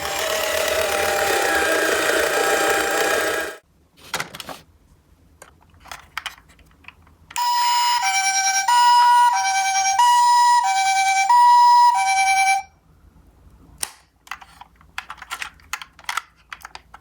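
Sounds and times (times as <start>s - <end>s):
toy siren two-tone hi-lo: 7.4s - 12.7s.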